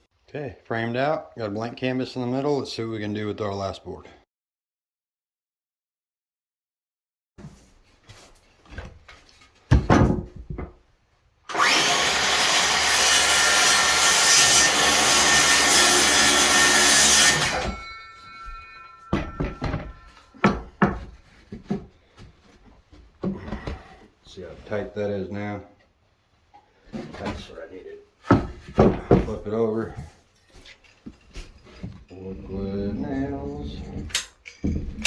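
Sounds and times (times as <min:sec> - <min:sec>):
knocks from handling wood: 0:09.7 - 0:10.8, 0:19.1 - 0:21.9, 0:28.2 - 0:29.4
power saw cutting board: 0:11.5 - 0:21.0.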